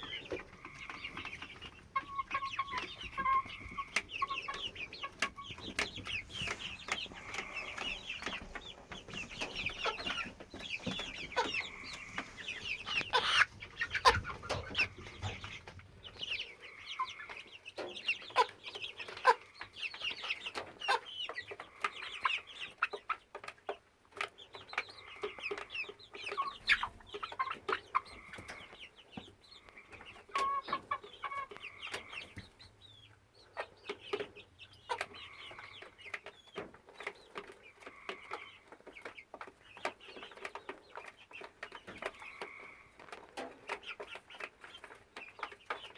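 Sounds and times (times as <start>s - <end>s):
young chicken calling: 0.0s - 15.6s.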